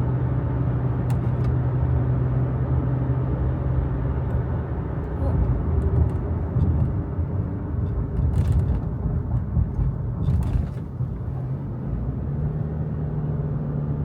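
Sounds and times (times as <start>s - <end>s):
car road noise and engine hum: 0.0s - 14.0s.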